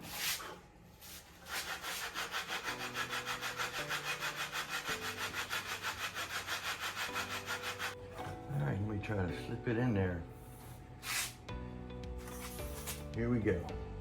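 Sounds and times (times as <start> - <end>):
hand saw cutting wood: 1.4 - 8.0.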